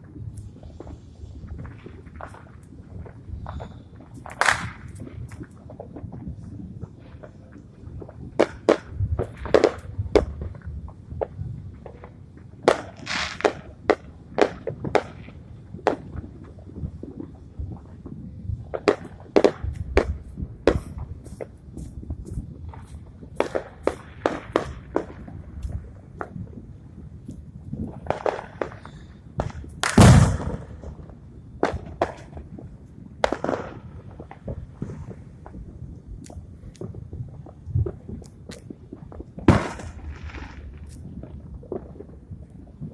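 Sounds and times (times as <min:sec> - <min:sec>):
fireworks crackling bursts: 0:00.0 - 0:10.7, 0:11.7 - 0:42.9
fireworks bangs: 0:00.6 - 0:05.8, 0:08.0 - 0:10.6, 0:11.8 - 0:17.8, 0:18.7 - 0:42.4
low booms: 0:15.3 - 0:42.9.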